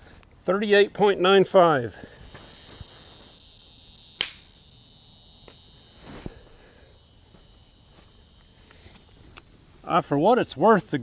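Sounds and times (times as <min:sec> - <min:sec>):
high insect-like drone: 0:00.7 - 0:11.0
sharp click: 0:04.2 - 0:04.5.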